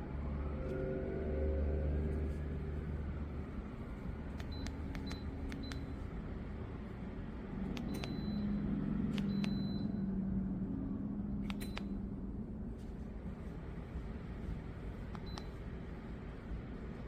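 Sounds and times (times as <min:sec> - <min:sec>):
low steady hum: 0:00.0 - 0:17.0
control panel button clicks: 0:04.3 - 0:06.0, 0:07.7 - 0:08.4, 0:09.1 - 0:09.8, 0:11.4 - 0:12.0, 0:15.1 - 0:15.6.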